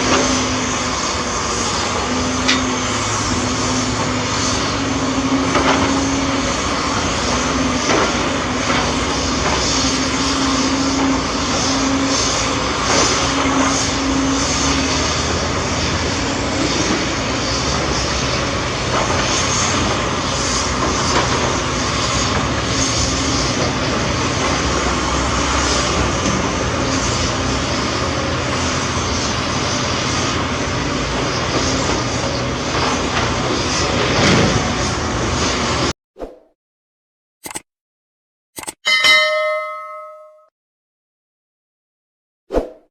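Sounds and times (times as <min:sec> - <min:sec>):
heavy machinery diesel engines: 0:00.0 - 0:35.9
steady tone: 0:38.6 - 0:40.5.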